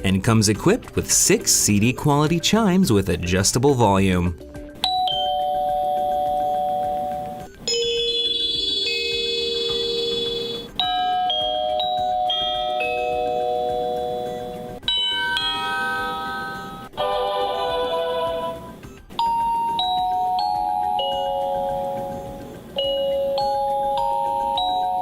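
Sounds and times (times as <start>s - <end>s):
door chime tunes: 4.8s - 25.0s.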